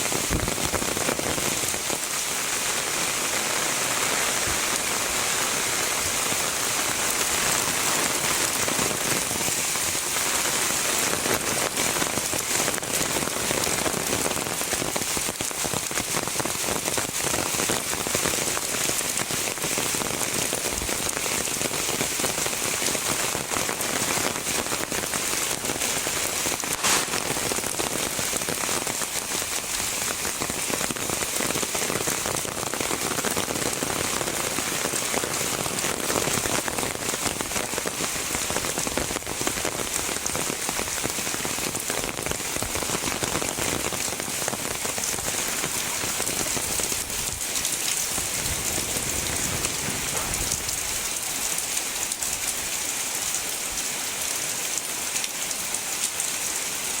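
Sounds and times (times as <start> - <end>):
heavy rain: 0.0 - 57.0.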